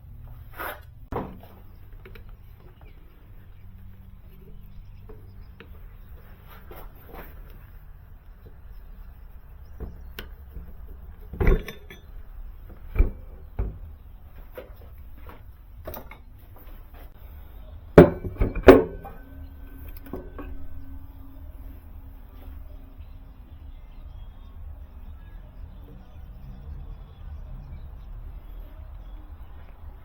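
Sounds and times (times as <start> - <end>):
tools knocking and clanking: 1.1 - 7.8, 8.4 - 17.2, 18.0 - 22.8.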